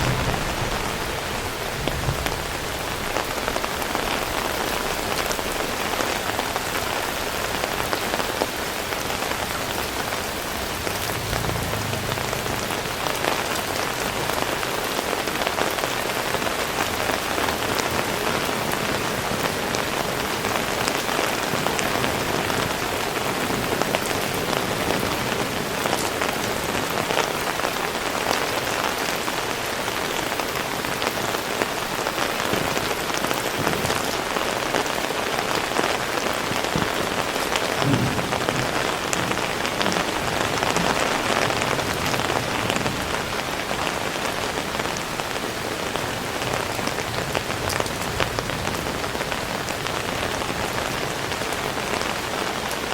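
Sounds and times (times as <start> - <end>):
low thump: 0.0 - 2.6, 37.8 - 40.0
heavy rain: 0.0 - 52.9.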